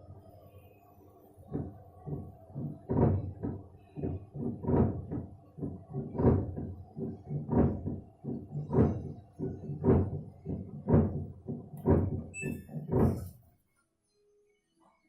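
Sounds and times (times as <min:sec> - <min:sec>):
washing machine drum knocking: 0:01.4 - 0:13.5.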